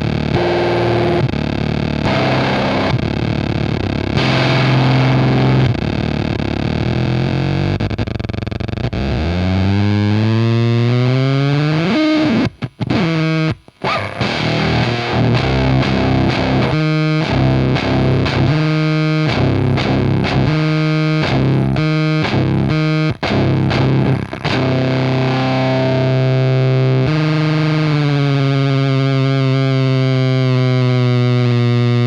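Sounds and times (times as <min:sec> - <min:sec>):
distorted fuzz electric guitar: 0:00.0 - 0:32.0.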